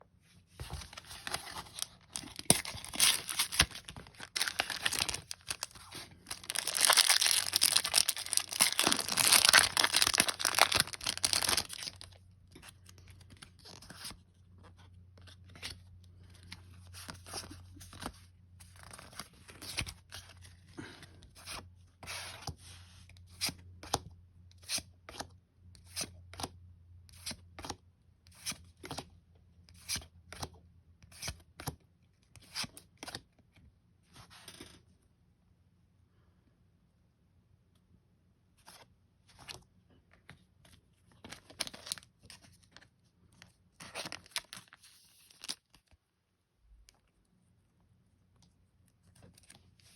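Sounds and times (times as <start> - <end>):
foil wrapper crinkling and tearing: 1.0 - 12.2, 43.8 - 45.9.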